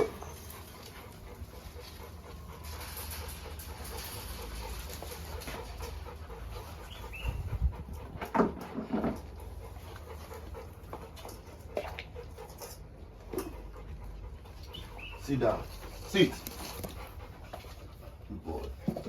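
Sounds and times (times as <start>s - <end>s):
dogs whining and yelping: 0.0s - 18.2s
steady low rumble: 5.6s - 8.2s.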